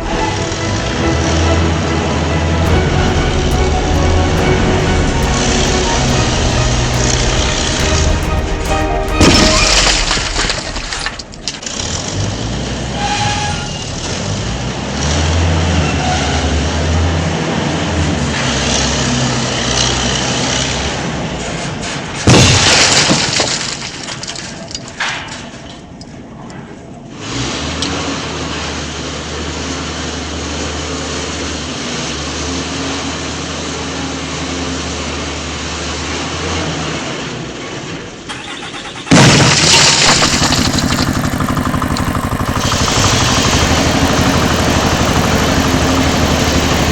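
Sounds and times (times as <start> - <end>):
low engine hum: 0.0 - 12.2, 40.0 - 46.9
heavy vehicle engines: 0.0 - 21.4, 27.4 - 46.9
loud crash: 2.6 - 14.0, 38.4 - 46.9.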